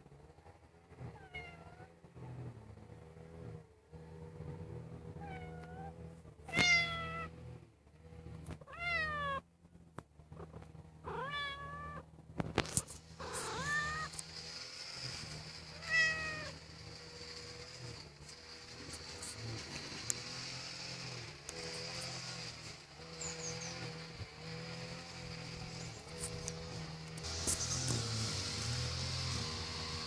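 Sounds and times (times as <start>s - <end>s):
animal calling: 13.2s - 14.1s.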